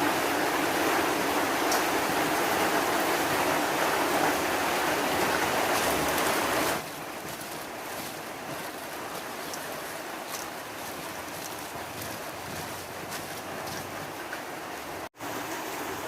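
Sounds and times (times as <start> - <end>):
heavy rain hissing: 0.0 - 16.0.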